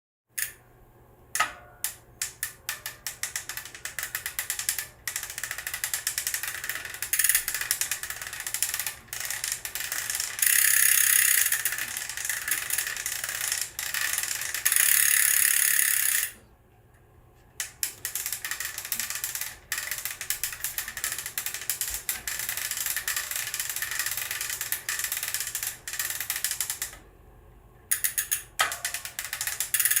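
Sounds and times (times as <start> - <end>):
bicycle freehub ratcheting clicks: 0.4 - 0.6, 1.4 - 16.4, 17.6 - 27.0, 27.9 - 30.0.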